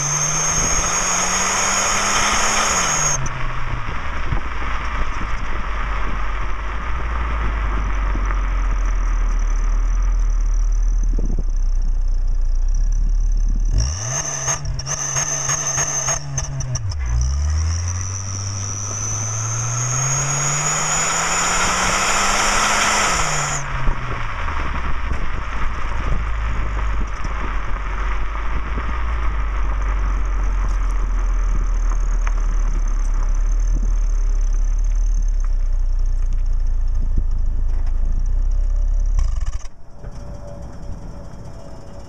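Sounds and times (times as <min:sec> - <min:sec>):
car engine accelerating: 0:00.0 - 0:42.0
exhaust whistle: 0:13.7 - 0:24.9.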